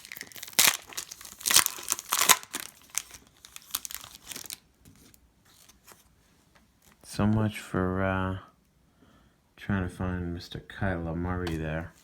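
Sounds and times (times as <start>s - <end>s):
foil wrapper crinkling and tearing: 0.0s - 4.7s.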